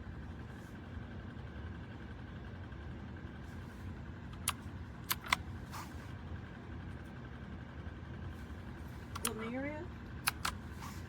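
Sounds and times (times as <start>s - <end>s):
low background rumble: 0.0s - 11.0s
mechanical keyboard key clicks: 4.4s - 5.4s, 10.2s - 10.6s.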